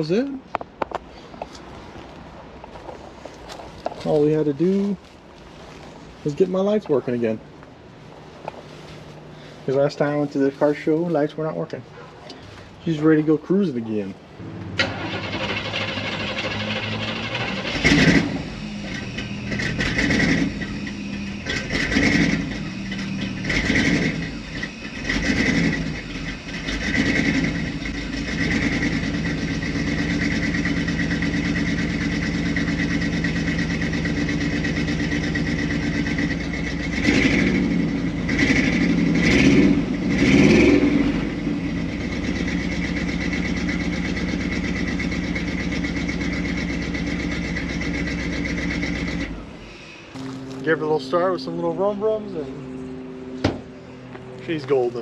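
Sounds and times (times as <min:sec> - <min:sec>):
truck engine revving and idling: 0:14.4 - 0:55.0.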